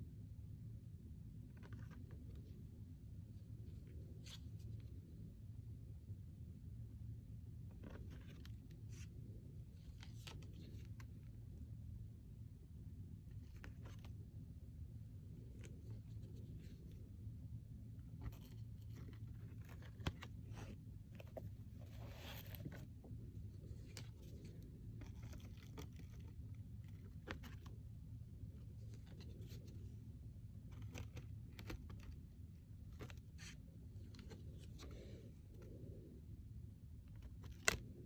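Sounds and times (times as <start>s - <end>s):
steady low hum: 0.0s - 38.0s
card sliding scrape: 18.2s - 22.9s
cards flipped and laid down: 18.2s - 22.9s, 25.0s - 27.7s, 30.7s - 32.2s, 37.2s - 37.9s.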